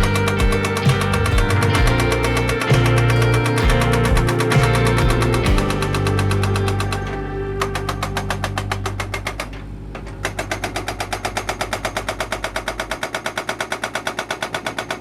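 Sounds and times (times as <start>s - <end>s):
excavator engine hum: 0.0s - 13.9s.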